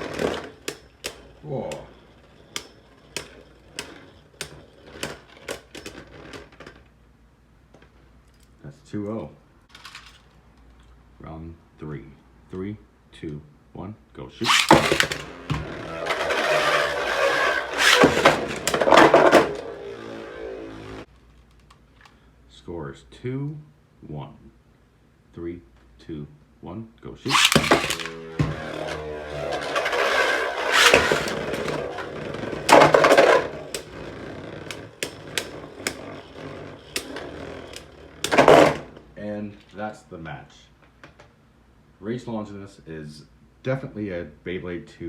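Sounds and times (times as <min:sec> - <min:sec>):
spinning tops whirring: 0:00.0 - 0:06.7, 0:14.4 - 0:21.1, 0:27.3 - 0:39.0
spinning tops clashing: 0:14.4 - 0:20.5, 0:27.3 - 0:38.9.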